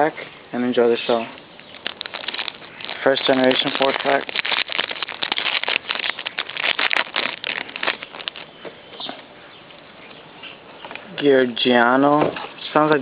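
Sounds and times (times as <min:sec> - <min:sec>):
foil wrapper crinkling and tearing: 0:01.6 - 0:08.6.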